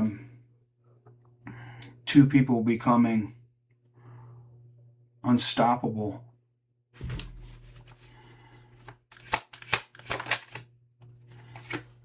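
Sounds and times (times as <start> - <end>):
cards being shuffled: 8.8 - 10.7, 11.3 - 12.0
card snaps and flicks: 9.1 - 10.6.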